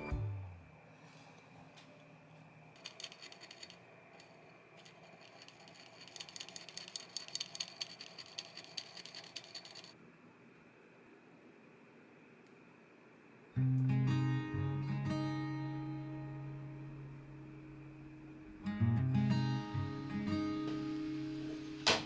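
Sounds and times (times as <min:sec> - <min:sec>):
small hard objects rattling: 0:02.8 - 0:10.0.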